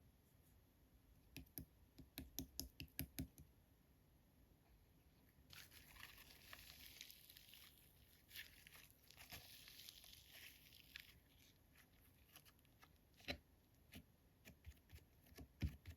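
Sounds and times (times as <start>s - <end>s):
slime crackling rustle: 5.5s - 12.9s.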